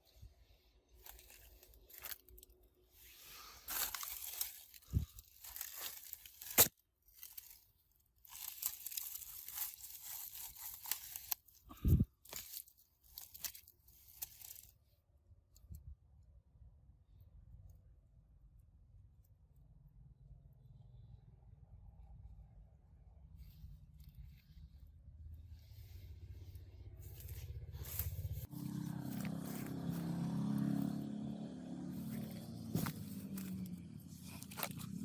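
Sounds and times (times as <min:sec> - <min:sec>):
tearing and scraping: 0:00.9 - 0:14.8, 0:25.7 - 0:35.0.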